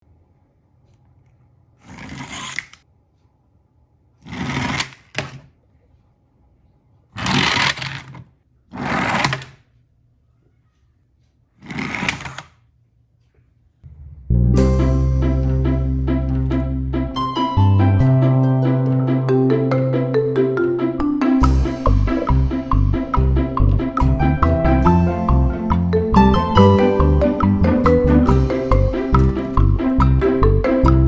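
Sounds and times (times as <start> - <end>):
plucked string music: 13.9 - 31.0.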